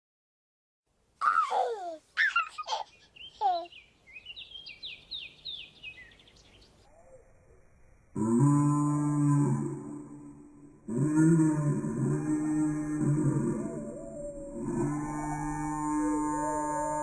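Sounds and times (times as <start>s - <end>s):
small songbird chirps: 2.9s - 8.1s
rooster crowing: 10.9s - 17.0s.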